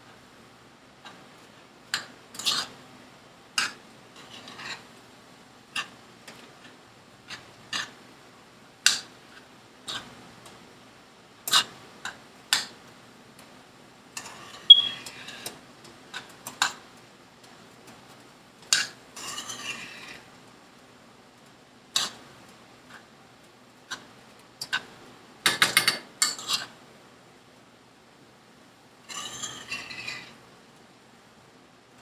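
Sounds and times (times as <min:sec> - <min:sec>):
utensil scraping: 0:01.9 - 0:02.8, 0:03.6 - 0:04.9, 0:18.7 - 0:20.3, 0:29.1 - 0:30.4
utensils and dishes clinking: 0:14.2 - 0:15.5.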